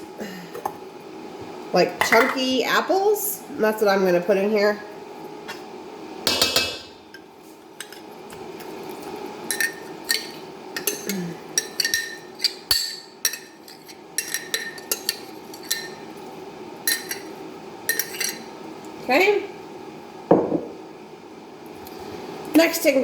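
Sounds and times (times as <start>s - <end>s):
spoon clinking against container: 9.5s - 16.0s, 16.9s - 17.3s, 17.9s - 18.4s.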